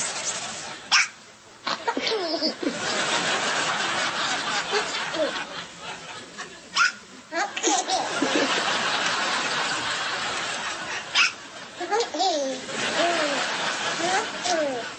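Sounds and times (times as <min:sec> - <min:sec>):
steady hiss: 0:00.0 - 0:01.6.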